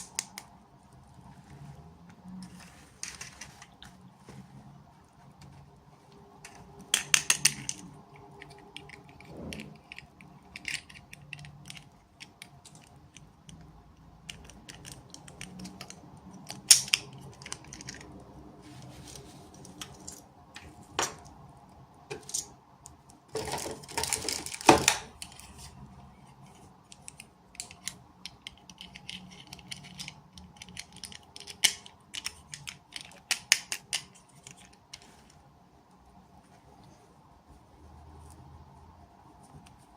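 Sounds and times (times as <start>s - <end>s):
small plastic parts clicking: 6.4s - 18.2s, 26.5s - 35.4s.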